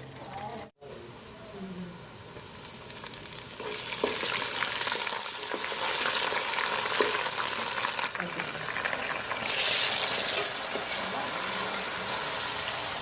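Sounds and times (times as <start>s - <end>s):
food sizzling in hot oil: 2.0s - 13.0s
spoon scraping a pan: 9.4s - 12.5s.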